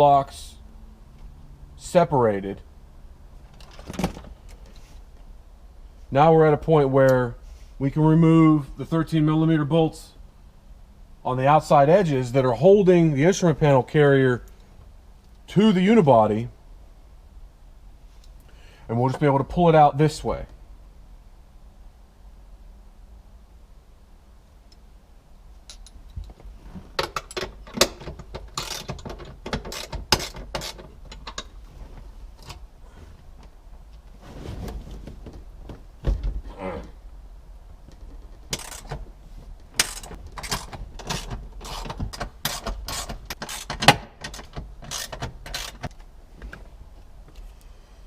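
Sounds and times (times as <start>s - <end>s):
scraping and handling noise: 25.7s - 36.5s, 37.8s - 47.6s
ratchet wrench clicking: 28.6s - 29.0s, 44.8s - 45.9s.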